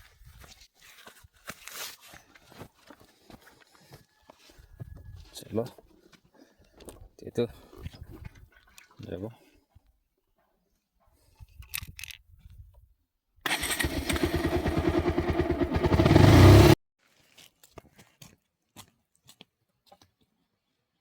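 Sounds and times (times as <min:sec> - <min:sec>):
small petrol engine running: 0:13.5 - 0:16.8.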